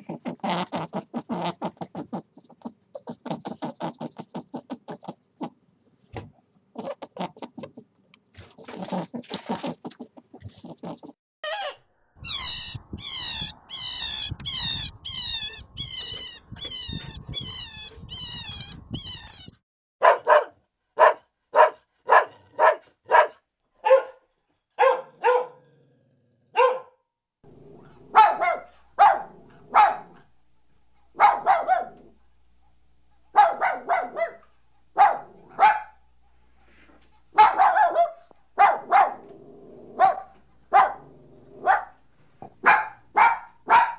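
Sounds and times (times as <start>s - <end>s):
high squeaky falling calls: 11.4s - 19.6s
dog barking: 20.0s - 25.7s, 26.5s - 27.0s, 28.1s - 30.3s, 31.1s - 32.1s, 33.3s - 36.0s, 37.3s - 39.3s, 40.0s - 42.0s, 42.6s - 43.9s.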